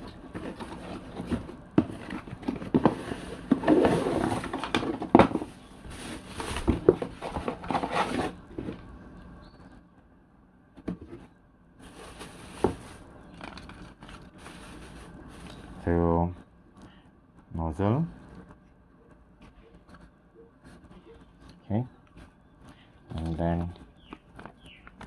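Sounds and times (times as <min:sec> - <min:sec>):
cardboard packaging rustling: 0:00.0 - 0:08.9, 0:10.8 - 0:15.8.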